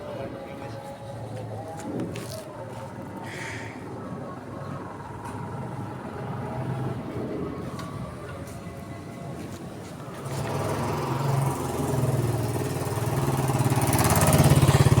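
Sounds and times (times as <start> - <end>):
small engine pulsing: 10.1 - 15.0.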